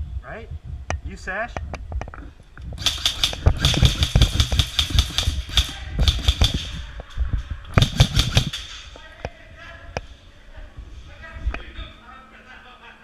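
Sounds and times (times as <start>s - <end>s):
airsoft gun firing bursts: 2.8s - 6.9s, 7.7s - 8.8s.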